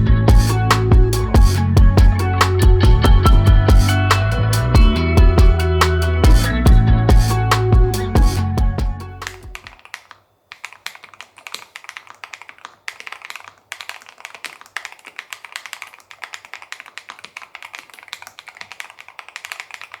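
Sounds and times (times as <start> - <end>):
fast typing on mechanical keyboard: 9.3 - 20.0.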